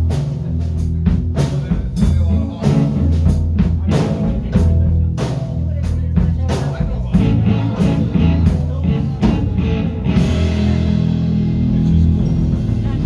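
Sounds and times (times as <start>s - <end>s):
instrumental rock band: 0.0s - 13.0s.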